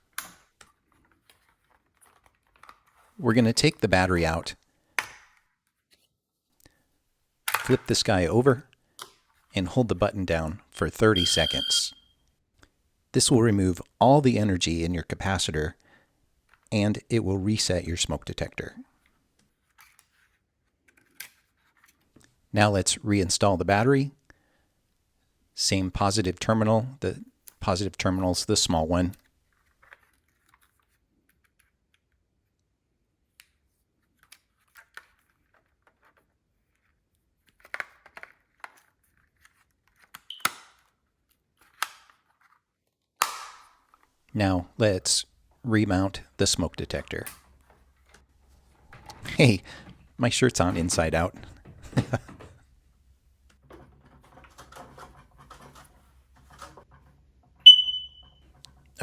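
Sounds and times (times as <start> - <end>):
handling and rustling: 0.0 - 3.2, 18.9 - 22.3, 29.2 - 32.0, 33.8 - 43.0, 46.9 - 59.0
smoke detector chirp: 11.2 - 12.1, 40.3 - 40.5, 57.6 - 58.4.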